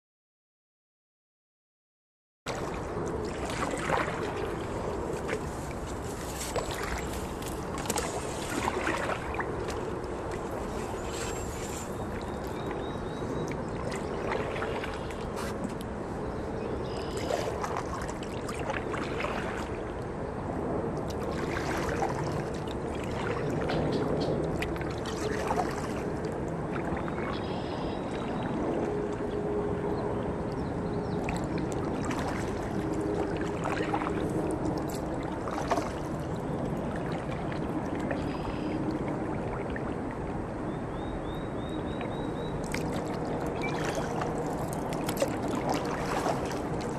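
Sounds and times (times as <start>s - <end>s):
kayak paddle splashing: 2.5s - 16.0s, 16.6s - 20.0s, 21.0s - 29.4s, 31.0s - 40.3s, 41.0s - 46.9s
wash of moving water: 2.5s - 46.9s
water dripping from paddle: 42.0s - 46.9s.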